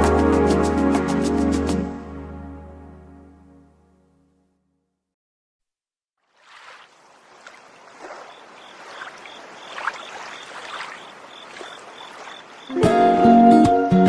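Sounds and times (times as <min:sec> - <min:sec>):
music: 0:00.0 - 0:05.0, 0:12.7 - 0:14.0
water gently lapping: 0:06.2 - 0:13.1
faint high chirp: 0:07.8 - 0:12.8.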